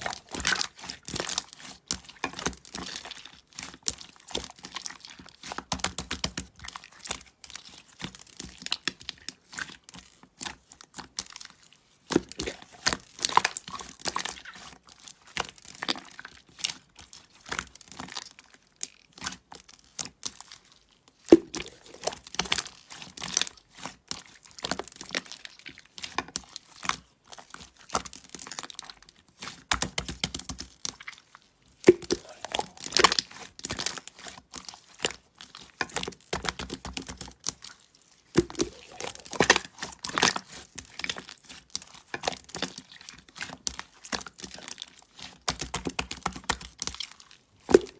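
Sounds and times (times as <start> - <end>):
material crinkling and tearing: 31.3 - 34.9.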